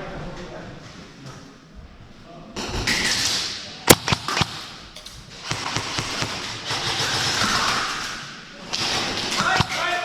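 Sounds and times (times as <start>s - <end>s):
sharp clicks: 3.9s - 5.6s.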